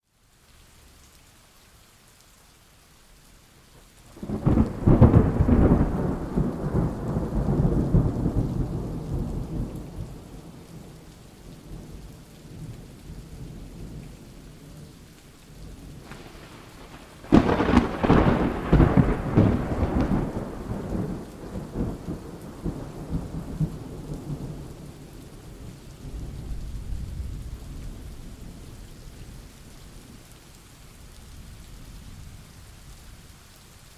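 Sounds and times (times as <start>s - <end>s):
steady rain: 0.0s - 33.9s
thunder clap and rumble: 4.2s - 11.0s, 15.7s - 28.7s.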